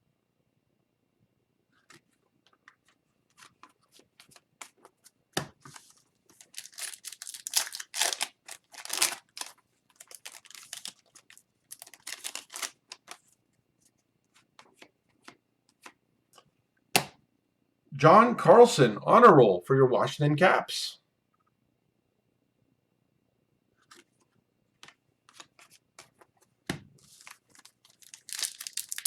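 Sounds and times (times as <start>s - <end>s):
cards rustling and scraping: 1.8s - 16.5s, 23.8s - 29.0s.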